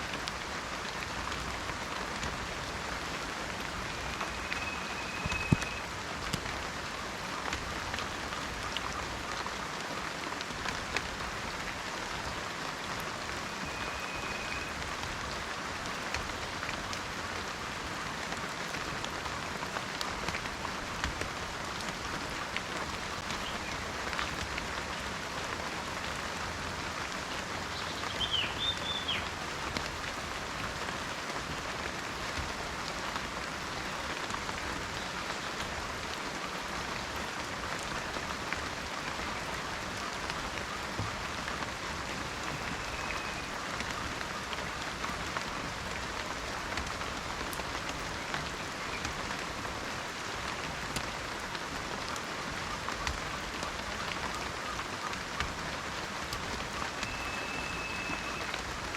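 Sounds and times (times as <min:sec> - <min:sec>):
rain falling in a forest: 0:00.0 - 0:58.9
faint thin whistle: 0:03.9 - 0:05.9, 0:13.6 - 0:14.7, 0:42.8 - 0:43.5, 0:57.0 - 0:58.6.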